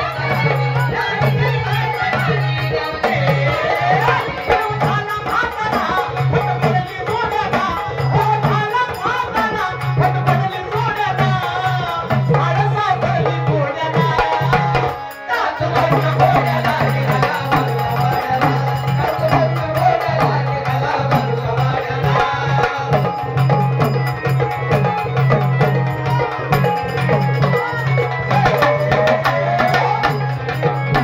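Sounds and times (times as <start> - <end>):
hand drum beating: 15.8 - 31.0.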